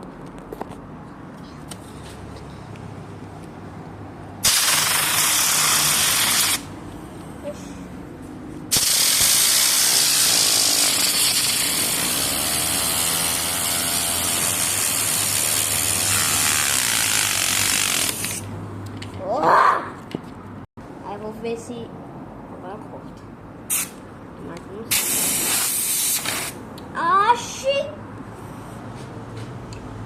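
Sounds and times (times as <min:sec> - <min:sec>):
compressed air blasting: 0:04.4 - 0:06.8, 0:08.7 - 0:18.5, 0:23.7 - 0:24.0, 0:24.9 - 0:26.6.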